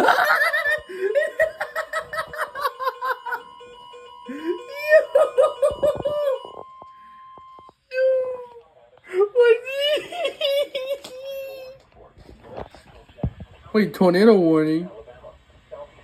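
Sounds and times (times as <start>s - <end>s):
people laughing: 0.0s - 3.5s, 4.3s - 6.6s, 9.1s - 11.4s.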